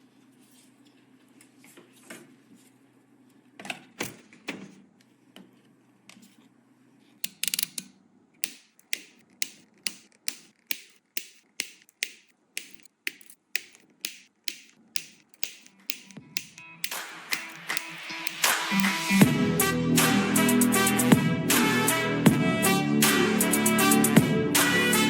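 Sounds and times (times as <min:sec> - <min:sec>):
sharp clicks: 0:07.3 - 0:19.1.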